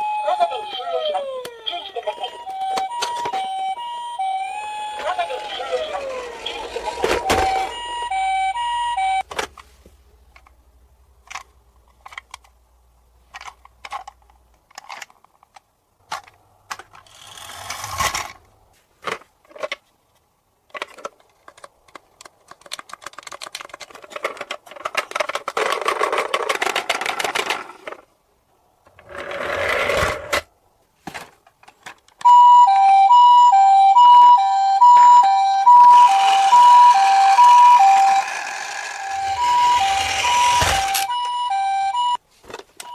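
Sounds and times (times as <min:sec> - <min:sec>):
toy siren hee-haw: 0:00.0 - 0:09.2, 0:32.3 - 0:42.2
clicks and clatter: 0:20.7 - 0:28.0.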